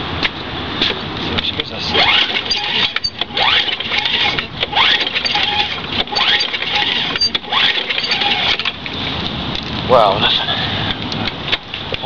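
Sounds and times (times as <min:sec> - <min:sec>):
lawn mower pull-starter whirring: 0:01.9 - 0:09.2.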